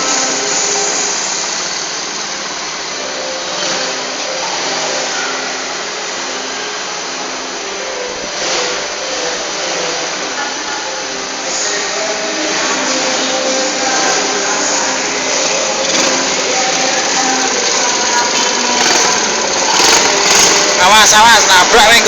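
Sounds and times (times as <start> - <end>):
atv motor drone: 11.7 - 22.0.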